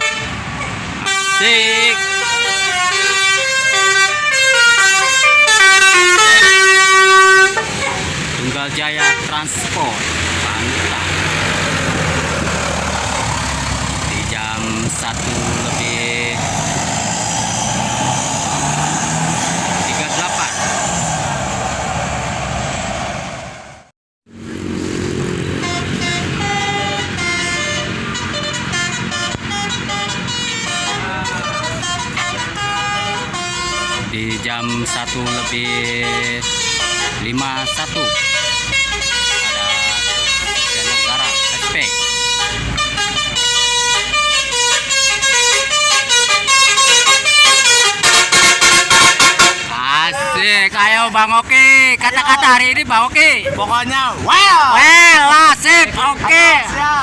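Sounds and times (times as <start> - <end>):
bus horn playing melody: 0.0 - 9.6, 25.5 - 50.4
passing traffic: 0.0 - 57.0.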